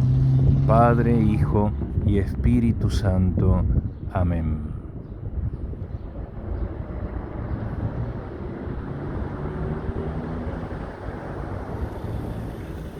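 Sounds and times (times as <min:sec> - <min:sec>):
low outdoor rumble: 0:00.0 - 0:12.9.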